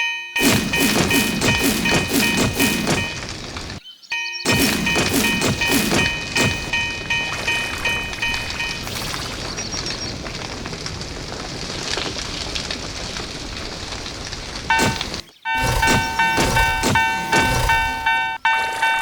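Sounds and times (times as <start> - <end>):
rhythmic pitched ringing: 0.0 - 3.4, 4.1 - 9.2, 14.7 - 19.0.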